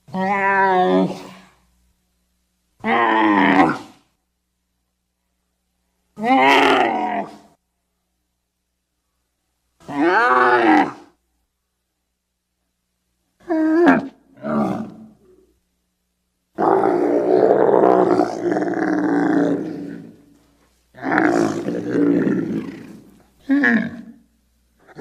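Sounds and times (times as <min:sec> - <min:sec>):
camel bellowing: 0:06.2 - 0:07.4, 0:16.6 - 0:20.2, 0:21.0 - 0:24.2.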